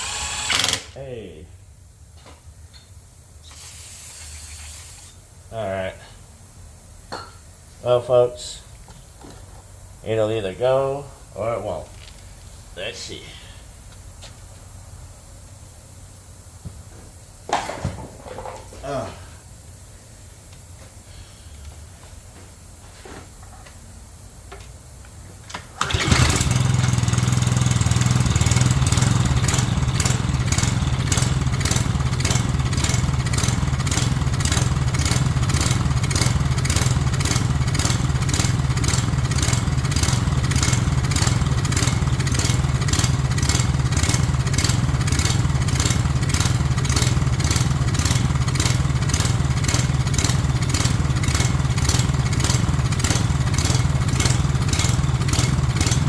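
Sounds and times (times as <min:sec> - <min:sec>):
pressure washer engine running: 0:25.8 - 0:56.0.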